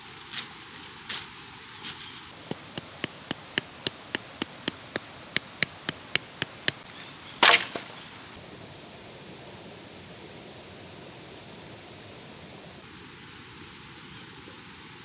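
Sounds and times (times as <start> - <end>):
quick chopping strikes: 7.4 - 8.0
loud crack: 7.4 - 8.2.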